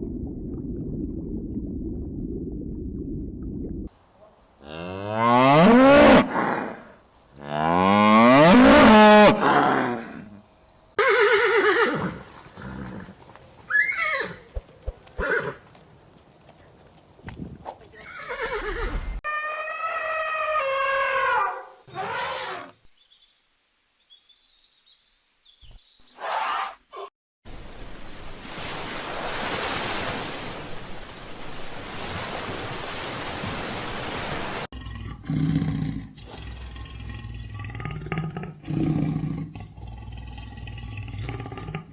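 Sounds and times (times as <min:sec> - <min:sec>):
farm animal calls: 0:11.0 - 0:21.2.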